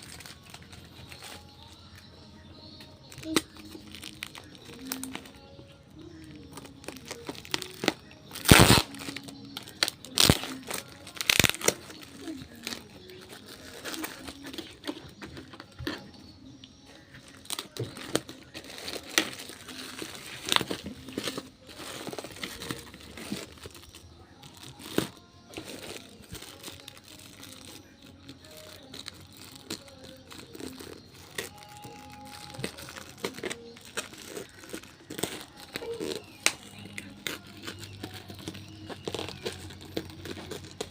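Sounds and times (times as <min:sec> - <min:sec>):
packaging crinkling and rustling: 0:06.2 - 0:16.0, 0:17.2 - 0:40.9.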